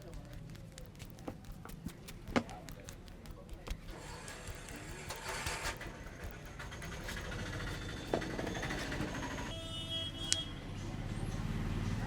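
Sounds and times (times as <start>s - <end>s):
rubbing and tapping on scalp: 0.0s - 9.5s
vehicle horn: 9.5s - 10.8s.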